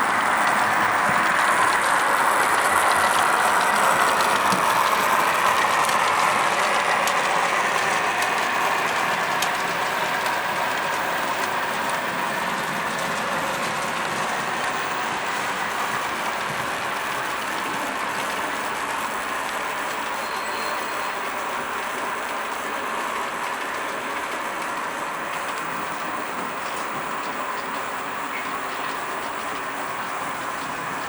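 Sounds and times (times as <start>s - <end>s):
model train motor whirring: 0.0s - 22.8s.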